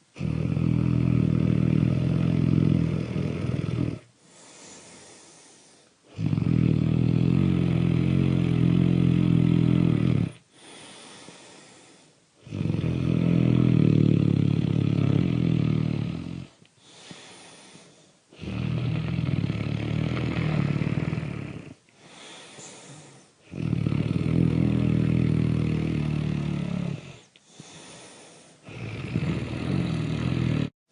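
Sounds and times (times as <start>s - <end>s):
loud rattly snoring: 0.0s - 5.2s, 6.1s - 11.8s, 12.4s - 17.7s, 18.4s - 30.8s
quiet breaths out: 4.0s - 6.2s, 10.3s - 12.5s, 16.4s - 18.4s, 20.4s - 23.5s, 26.6s - 29.0s.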